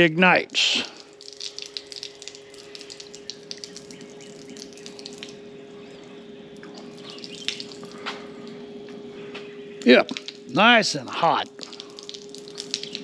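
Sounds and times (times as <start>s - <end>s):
shower water splattering: 0.0s - 5.4s, 6.6s - 8.0s, 9.9s - 10.7s, 11.3s - 13.0s
water heater hum: 0.0s - 13.0s.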